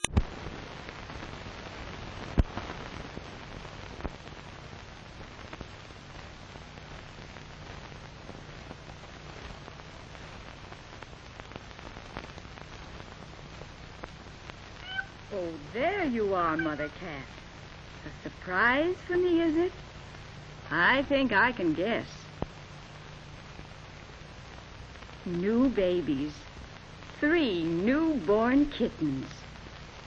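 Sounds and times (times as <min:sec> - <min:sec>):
clicks and pops: 0:00.0 - 0:00.5, 0:02.3 - 0:03.2
old film hiss and crackle: 0:00.0 - 0:30.0.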